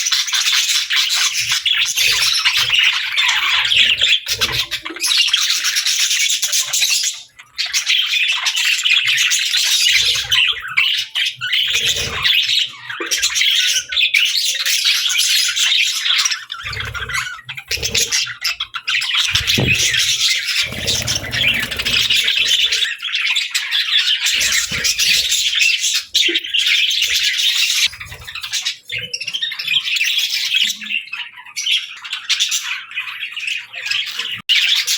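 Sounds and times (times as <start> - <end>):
budgerigars chattering: 0.0 - 34.9
low thumps: 19.4 - 20.3.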